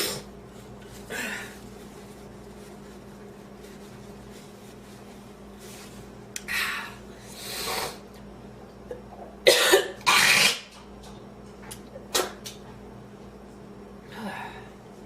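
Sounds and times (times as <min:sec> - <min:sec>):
steady low hum: 0:00.0 - 0:15.0
woman coughing: 0:09.4 - 0:10.6.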